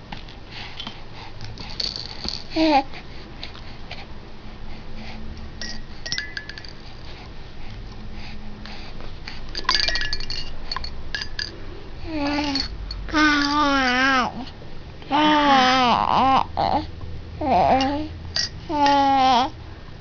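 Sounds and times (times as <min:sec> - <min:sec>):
small cymbals clinking: 0:05.6 - 0:06.9, 0:09.6 - 0:13.9, 0:17.8 - 0:18.6
baby babbling: 0:12.0 - 0:14.5, 0:15.1 - 0:18.1, 0:18.7 - 0:19.6.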